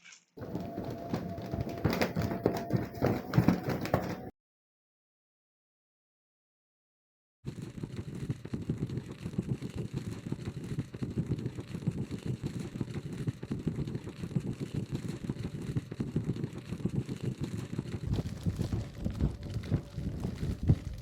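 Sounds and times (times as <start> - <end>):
low fluttering engine-like rumble: 18.1 - 21.0.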